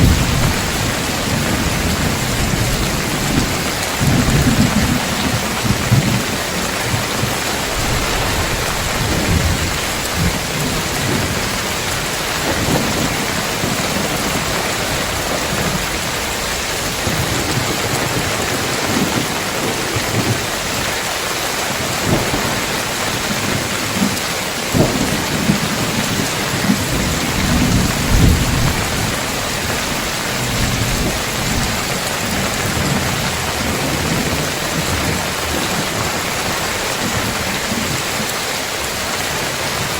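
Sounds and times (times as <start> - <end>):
low thunder rumbling: 0.0 - 18.2
heavy rain on a tiled roof: 0.0 - 39.9.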